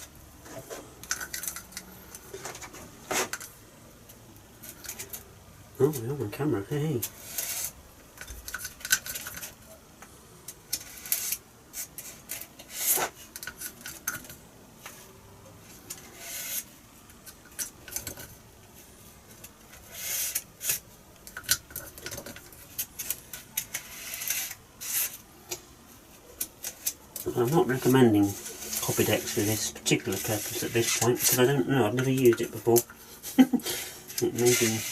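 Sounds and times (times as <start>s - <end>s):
small scrapes and taps: 0.0s - 3.5s.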